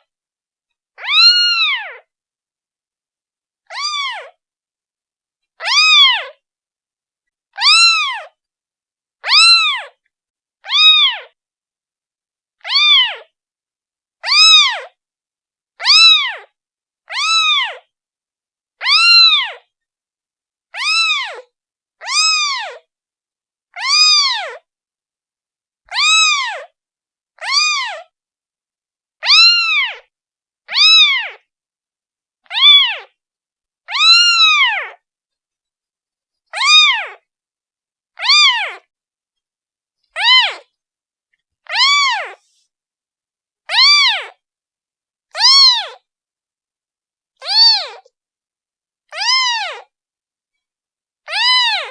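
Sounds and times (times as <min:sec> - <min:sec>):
kitten meowing: 0:01.0 - 0:02.0, 0:03.7 - 0:04.4, 0:05.6 - 0:06.4, 0:07.6 - 0:08.3, 0:09.2 - 0:10.0, 0:10.6 - 0:11.4, 0:12.6 - 0:13.3, 0:14.2 - 0:15.0, 0:15.8 - 0:16.5, 0:17.1 - 0:17.9, 0:18.8 - 0:19.6, 0:20.8 - 0:22.8, 0:23.7 - 0:24.6, 0:25.9 - 0:26.7, 0:27.4 - 0:28.1, 0:29.2 - 0:30.1, 0:30.7 - 0:31.4, 0:32.4 - 0:33.1, 0:33.9 - 0:35.0, 0:36.5 - 0:37.2, 0:38.2 - 0:38.9, 0:40.2 - 0:40.7, 0:41.7 - 0:42.5, 0:43.7 - 0:44.4, 0:45.4 - 0:46.0, 0:47.4 - 0:48.1, 0:49.1 - 0:49.9, 0:51.3 - 0:51.9.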